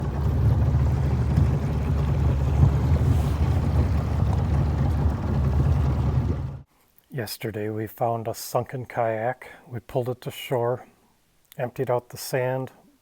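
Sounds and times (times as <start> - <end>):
loud low rumbling: 0.0 - 6.6.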